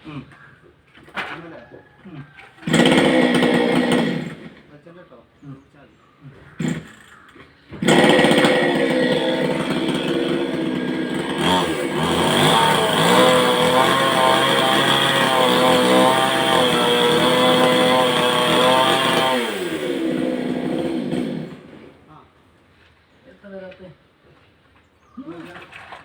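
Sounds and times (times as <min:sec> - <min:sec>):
chainsaw running: 0:02.6 - 0:04.7, 0:06.6 - 0:06.9, 0:07.8 - 0:22.1.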